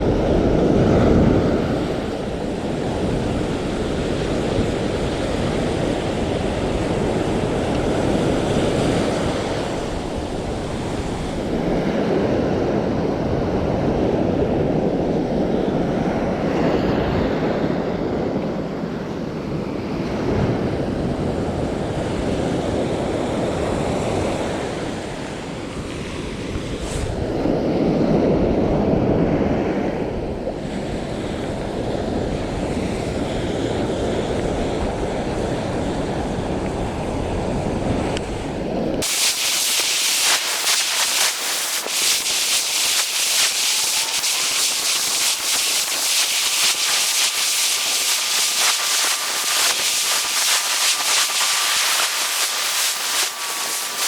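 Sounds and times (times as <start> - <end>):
surf breaking on beach: 39.0 - 54.0.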